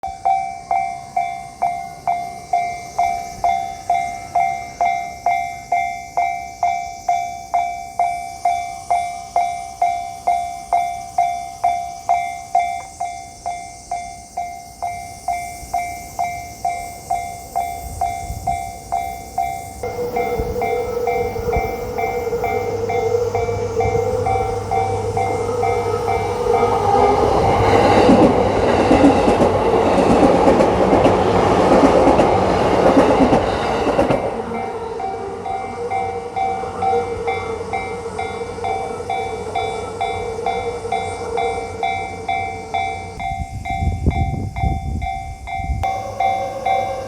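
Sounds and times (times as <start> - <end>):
steady train whine: 0.0 - 47.0
train rumble: 0.0 - 47.0
level crossing bell dinging: 39.3 - 47.0.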